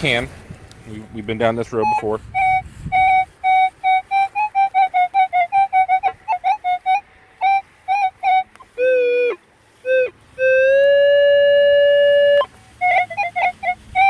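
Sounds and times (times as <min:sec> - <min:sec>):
metal detector beeps and tones: 0:01.3 - 0:09.3.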